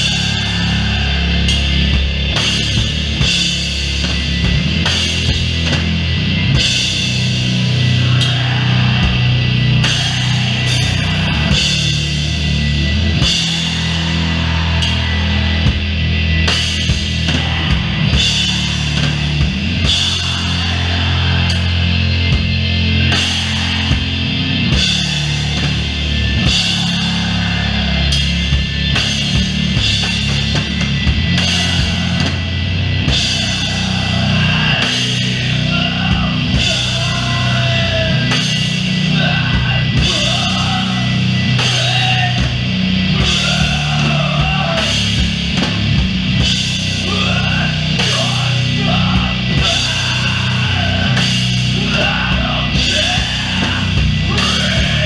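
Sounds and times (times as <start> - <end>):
bass guitar: 0.0 - 55.0
drums with cymbal crashes: 0.0 - 55.0
heavy distorted guitars: 0.0 - 55.0.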